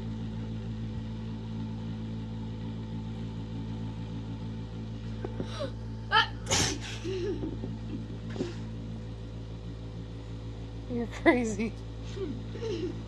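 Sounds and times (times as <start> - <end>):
steady low hum: 0.0 - 13.0
person sneezing: 6.2 - 7.0.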